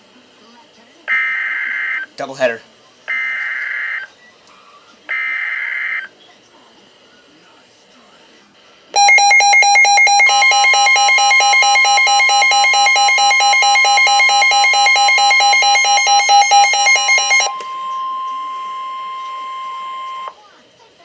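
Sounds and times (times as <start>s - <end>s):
pulsing electronic alarm beeping: 9.0s - 20.4s
steady warning alarm tone: 9.0s - 20.4s.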